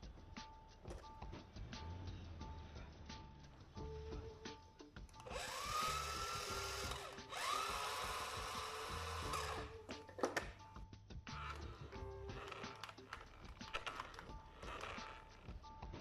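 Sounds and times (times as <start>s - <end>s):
small electric motor whirring: 5.2s - 9.8s, 11.4s - 15.5s
clicks: 12.4s - 15.4s.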